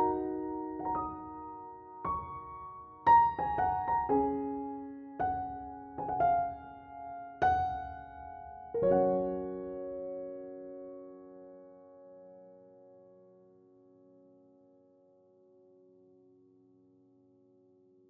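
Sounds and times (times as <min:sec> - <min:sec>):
gentle piano playing: 0:00.0 - 0:13.4.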